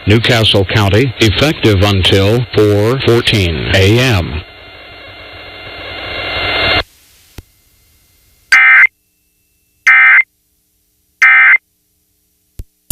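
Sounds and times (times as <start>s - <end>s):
loud broadcast hiss: 0.0s - 8.6s.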